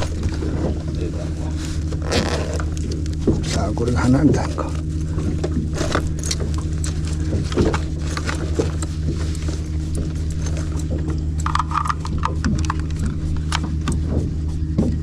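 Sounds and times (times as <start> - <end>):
boat engine humming: 0.0 - 15.0
knocks and clicks: 10.0 - 15.0.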